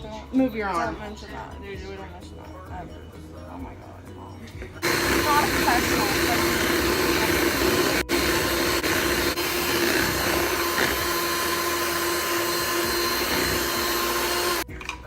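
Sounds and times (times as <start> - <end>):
electric mixer running: 4.8 - 14.7.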